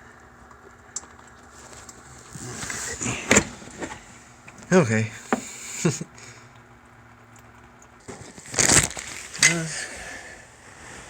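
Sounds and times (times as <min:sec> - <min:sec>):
man's wordless vocal sounds: 0:04.7 - 0:06.1.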